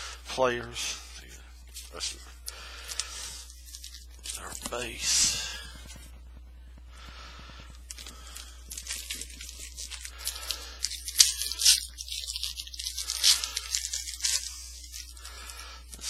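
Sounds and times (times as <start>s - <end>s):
foil pack tearing and crinkling: 7.9s - 16.0s.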